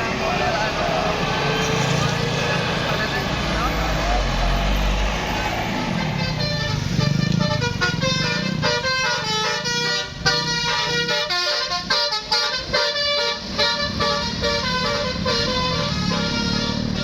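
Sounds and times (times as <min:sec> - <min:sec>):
bus air horns playing melody: 0:05.9 - 0:17.0.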